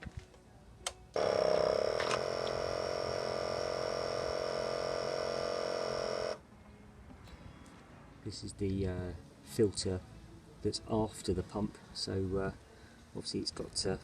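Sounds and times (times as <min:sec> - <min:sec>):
electric fuel pump buzzing: 0:01.1 - 0:06.4.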